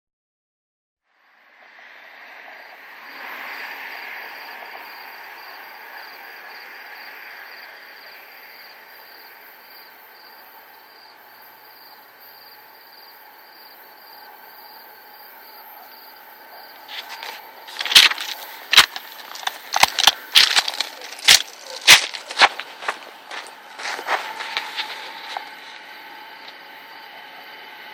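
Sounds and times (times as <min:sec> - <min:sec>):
distant train rumbling: 0:01.4 - 0:27.9.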